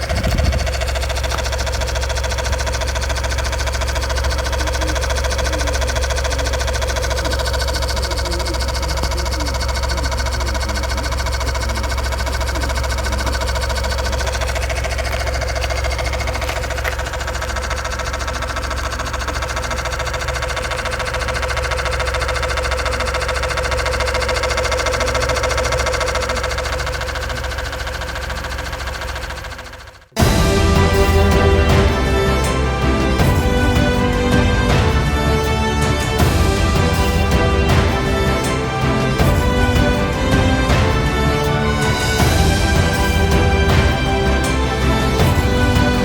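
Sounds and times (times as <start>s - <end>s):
car engine idling: 0.0s - 46.0s.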